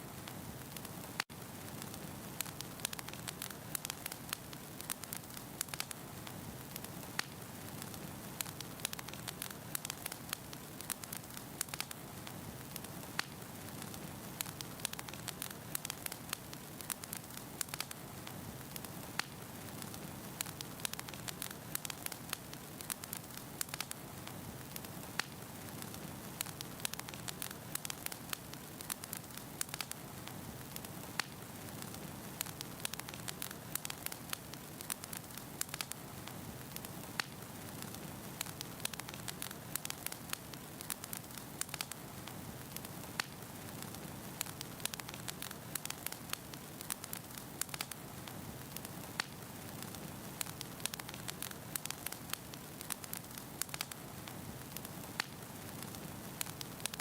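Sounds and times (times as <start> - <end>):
logs crackling and popping: 0.0 - 57.0.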